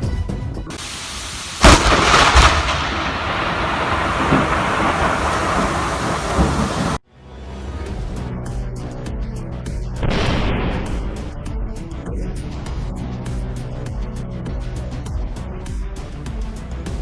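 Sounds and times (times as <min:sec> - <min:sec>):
heavy rain hiss: 0:00.7 - 0:07.0
loud thunderclap: 0:01.6 - 0:07.0.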